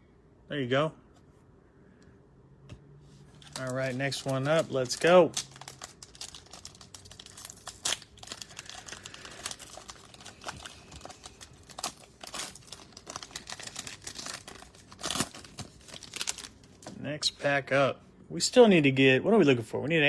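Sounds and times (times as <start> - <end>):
plastic wrapper crinkling and tearing: 3.3 - 17.0.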